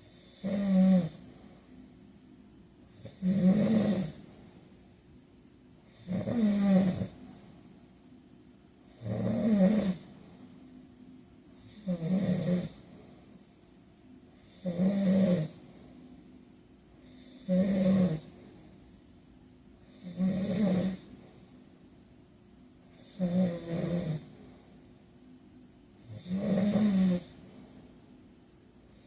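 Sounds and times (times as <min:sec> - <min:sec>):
man snoring: 0:00.0 - 0:01.2, 0:02.9 - 0:04.2, 0:05.9 - 0:07.2, 0:08.9 - 0:10.1, 0:11.6 - 0:12.9, 0:14.4 - 0:15.6, 0:17.0 - 0:18.3, 0:19.8 - 0:21.1, 0:22.9 - 0:24.3, 0:26.0 - 0:27.4
quiet breathing: 0:00.0 - 0:29.0.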